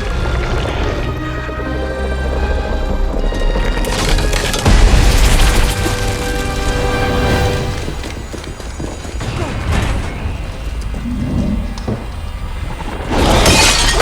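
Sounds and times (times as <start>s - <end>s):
dramatic orchestral music: 0.0s - 8.4s.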